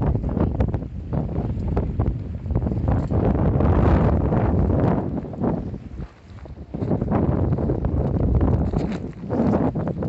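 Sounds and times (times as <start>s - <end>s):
wind buffeting microphone: 0.0s - 10.0s.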